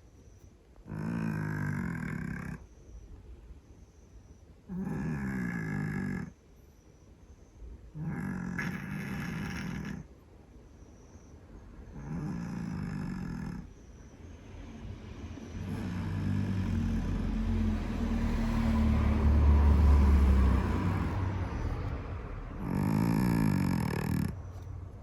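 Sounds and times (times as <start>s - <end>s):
cat snoring: 4.7s - 6.3s, 8.0s - 10.1s, 11.9s - 13.7s, 15.4s - 17.5s, 19.2s - 21.8s, 22.6s - 24.4s.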